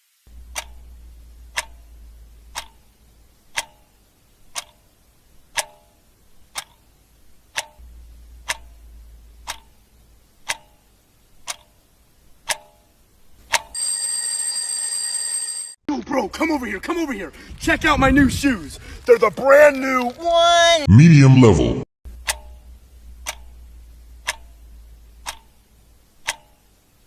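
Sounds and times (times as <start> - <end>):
clock ticking: 0.3 - 12.8, 13.4 - 13.8, 22.1 - 27.0
loud ringing alarm bell: 13.7 - 15.8.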